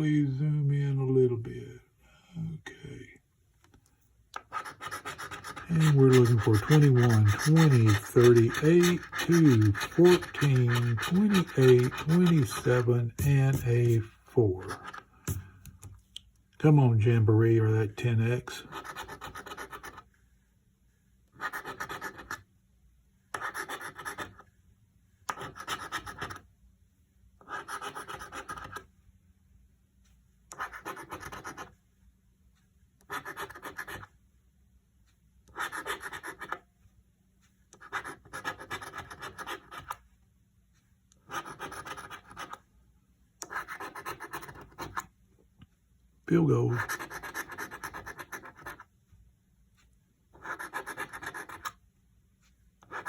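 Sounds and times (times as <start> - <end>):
lottery ticket being scratched: 4.4 - 15.4, 18.0 - 20.0, 21.4 - 22.4, 23.4 - 24.4, 25.3 - 26.4, 27.4 - 28.8, 30.5 - 31.7, 33.0 - 34.1, 35.5 - 36.6, 37.8 - 40.0, 41.2 - 42.6, 43.4 - 45.1, 46.3 - 48.8, 50.4 - 51.8.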